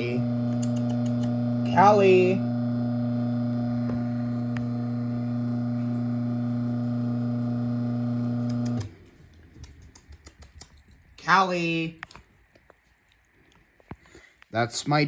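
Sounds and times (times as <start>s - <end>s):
garage door opener motor hum: 0.0s - 9.0s.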